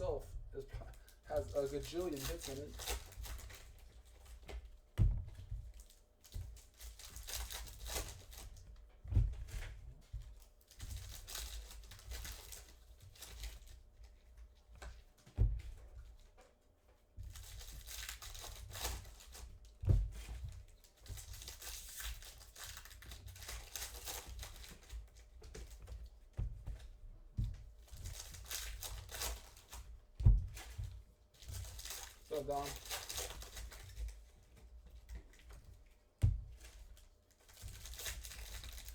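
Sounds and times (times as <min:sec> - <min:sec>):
wrappers tearing and crinkling: 0:00.1 - 0:04.0, 0:05.8 - 0:08.6, 0:10.4 - 0:13.8, 0:17.3 - 0:19.8, 0:20.6 - 0:25.3, 0:28.0 - 0:29.8, 0:31.4 - 0:34.3, 0:36.6 - 0:38.9
dull thumps on table: 0:05.0 - 0:05.5.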